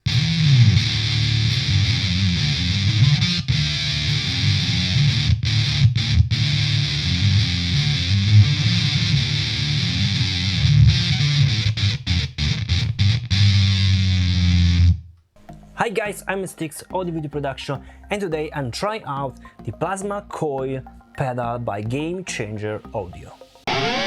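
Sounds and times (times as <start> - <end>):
distorted electric guitar riff: 0.0 - 15.0, 23.7 - 24.0.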